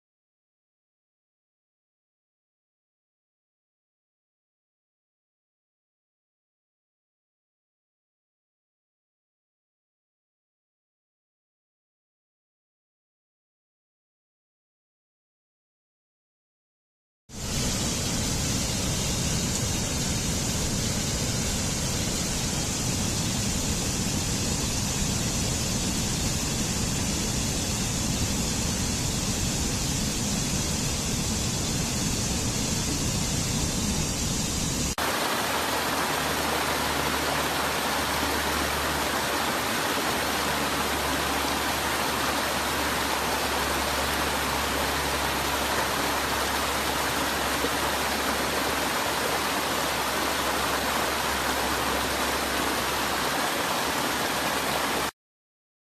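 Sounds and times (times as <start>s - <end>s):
falling water rushing: 17.4s - 55.1s.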